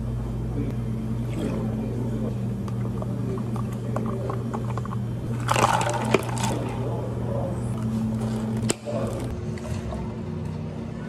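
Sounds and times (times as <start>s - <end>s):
cafe machinery hum: 0.0s - 11.0s
clicks and knocks of drink-making: 2.6s - 6.8s.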